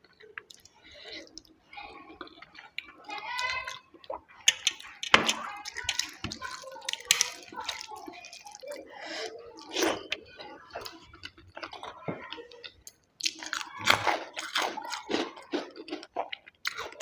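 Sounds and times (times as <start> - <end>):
person chewing and eating: 0.0 - 17.0
mouth clicks and smacks: 3.7 - 8.8.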